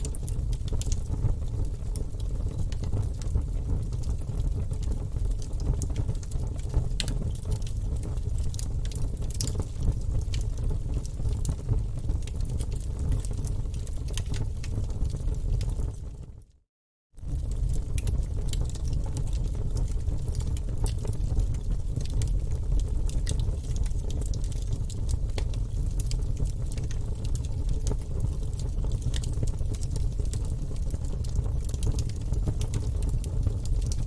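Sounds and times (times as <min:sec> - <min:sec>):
low rumble of flames: 0:00.0 - 0:16.5, 0:17.2 - 0:34.0
logs snapping and crackling: 0:29.0 - 0:29.9.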